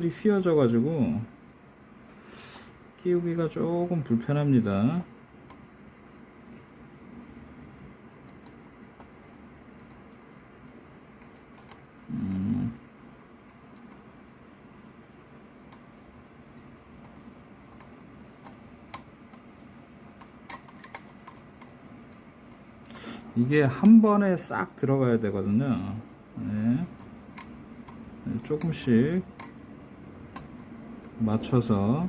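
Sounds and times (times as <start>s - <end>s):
connector pins clicking: 8.2s - 14.8s, 15.6s - 22.9s, 26.4s - 29.6s, 30.2s - 31.7s.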